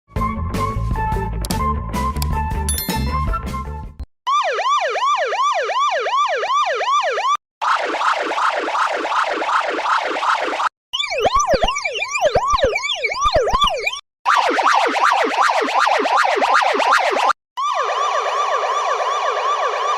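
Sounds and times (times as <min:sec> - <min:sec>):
music: 0:00.1 - 0:04.0
police siren wailing: 0:04.3 - 0:10.7, 0:14.3 - 0:19.9.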